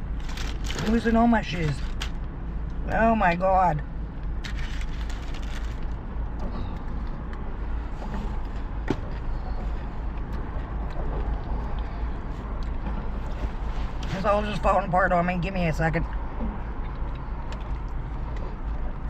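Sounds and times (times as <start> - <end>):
car cabin rumble: 0.0 - 19.0
faint clicks and rustles: 4.2 - 14.2.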